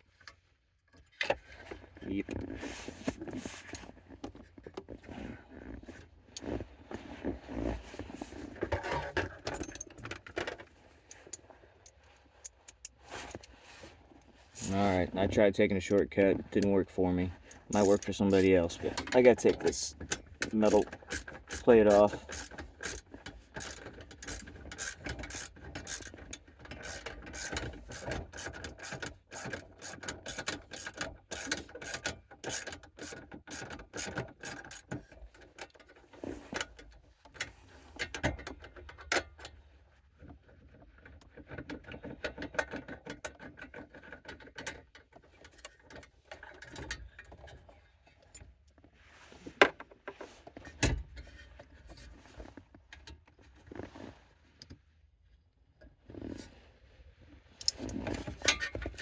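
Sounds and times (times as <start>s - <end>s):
ratchet wrench clicking: 17.7s - 18.5s, 20.4s - 23.0s, 23.6s - 26.1s, 26.8s - 34.8s.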